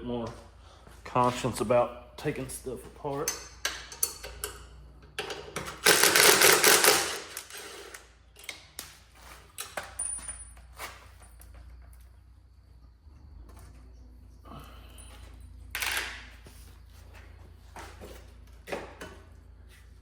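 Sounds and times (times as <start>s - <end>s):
metal tools clinking: 3.1s - 8.6s, 9.5s - 11.6s.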